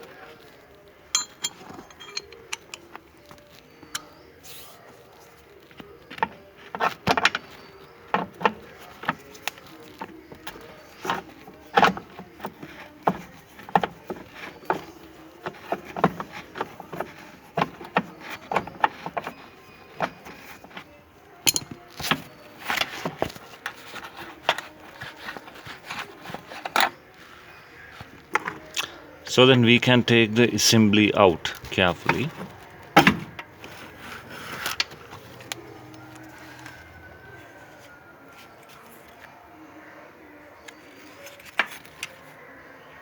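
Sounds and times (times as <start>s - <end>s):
hand tools clicking on metal: 1.1s - 3.0s, 6.1s - 26.9s.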